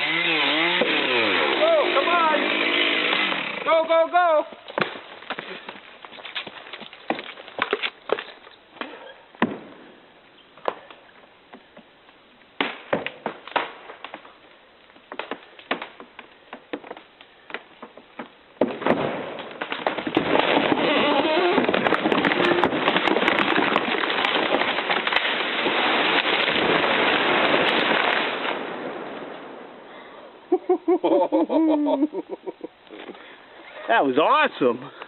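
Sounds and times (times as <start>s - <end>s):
tree wood cracking and snapping: 0.0s - 9.0s, 12.6s - 28.7s
tree crown crashing through branches: 18.6s - 28.8s.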